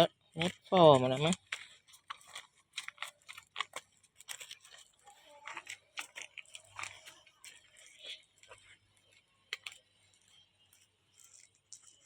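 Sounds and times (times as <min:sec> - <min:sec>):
seeds clicking as they fall: 0:00.0 - 0:12.0.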